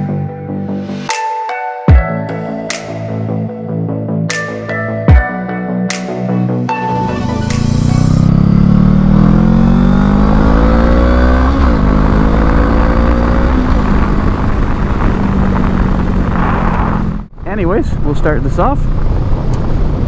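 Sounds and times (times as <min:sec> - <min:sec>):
motorcycle engine accelerating: 0:06.7 - 0:20.0.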